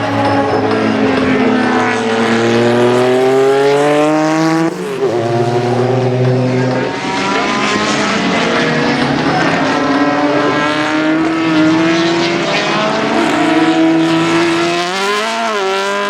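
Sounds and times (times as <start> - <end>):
race car engine at full throttle: 0.0 - 16.0.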